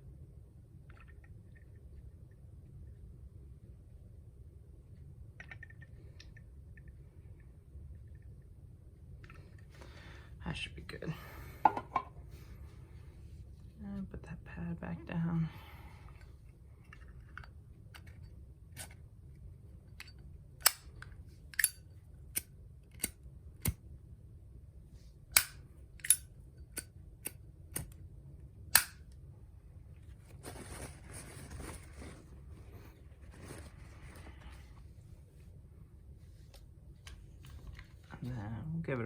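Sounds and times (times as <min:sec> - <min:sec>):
lighter metallic clicks: 0:25.3 - 0:28.0, 0:28.7 - 0:29.0
scratchy rustling: 0:30.1 - 0:34.9.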